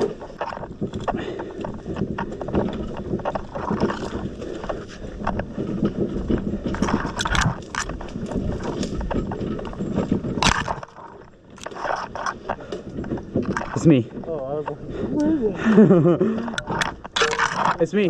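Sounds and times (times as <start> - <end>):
footsteps: 0.0 - 18.0
wheelbarrow rattling over rough ground: 0.0 - 18.0
sharp metal clanks: 16.6 - 17.9.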